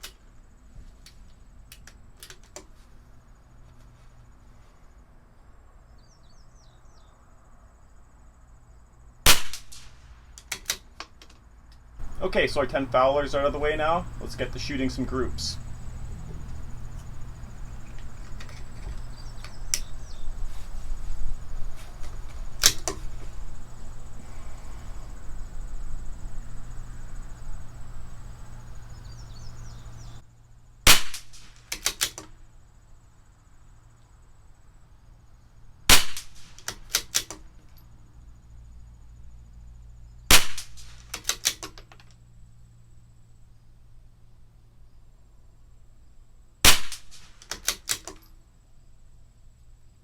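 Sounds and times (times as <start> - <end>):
rifle bolt clicks: 1.7 - 2.7, 9.3 - 11.8, 22.6 - 23.0, 30.9 - 32.4, 35.9 - 37.5, 40.3 - 42.2, 46.7 - 48.3
rifle shots: 9.3 - 11.0, 22.6 - 23.0, 30.9 - 32.3, 35.9 - 37.4, 40.3 - 41.7, 46.7 - 48.1.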